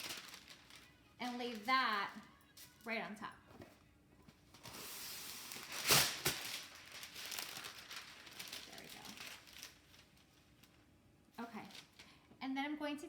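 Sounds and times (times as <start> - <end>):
parchment paper crinkling: 0.0 - 2.8, 4.6 - 12.2.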